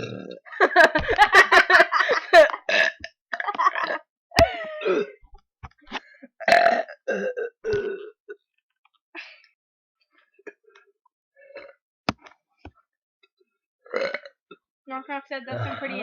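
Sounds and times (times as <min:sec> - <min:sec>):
person burping: 0:00.0 - 0:00.5, 0:02.4 - 0:05.2, 0:06.4 - 0:08.4, 0:11.4 - 0:11.8, 0:13.9 - 0:14.4, 0:15.5 - 0:16.0.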